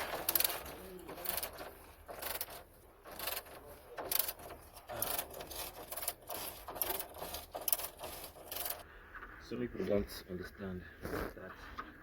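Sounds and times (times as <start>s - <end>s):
ratchet wrench clicking: 0.1s - 8.8s.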